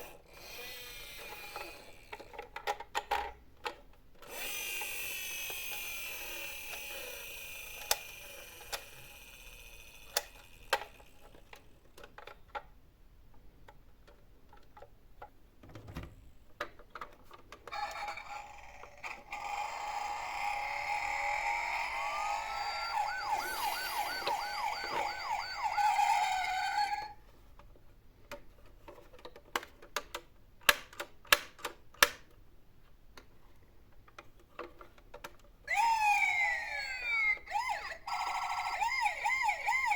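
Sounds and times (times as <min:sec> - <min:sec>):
toy electronic sound effects: 0:04.3 - 0:11.0, 0:17.7 - 0:27.2, 0:35.7 - 0:39.9
warbling toy siren: 0:04.3 - 0:11.0, 0:17.7 - 0:27.2, 0:35.7 - 0:39.9.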